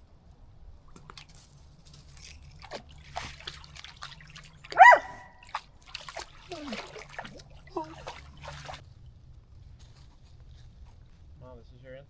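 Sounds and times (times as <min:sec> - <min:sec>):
water splashing in a puddle: 0:00.9 - 0:08.8.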